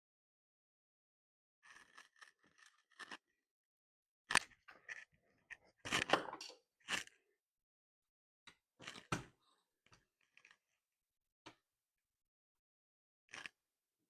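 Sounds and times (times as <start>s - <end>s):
clicks and scrapes of small parts: 1.6s - 3.4s, 4.3s - 7.2s, 8.5s - 9.2s, 9.9s - 10.8s, 13.3s - 13.6s.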